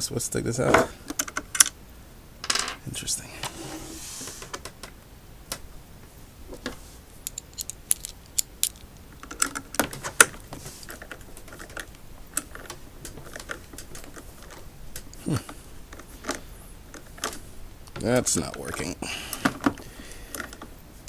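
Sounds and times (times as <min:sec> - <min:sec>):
hands and tools tapping parts: 0:06.6 - 0:20.7.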